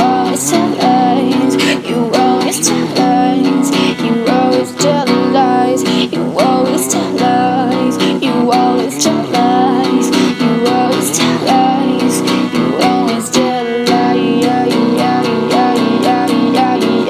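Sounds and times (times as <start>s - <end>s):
melody in long held notes: 0.0s - 17.0s
strummed guitar chords: 0.0s - 17.0s.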